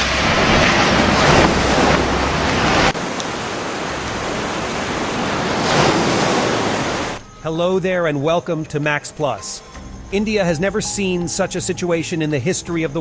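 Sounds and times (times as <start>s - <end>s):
floodwater rushing: 0.0s - 7.2s.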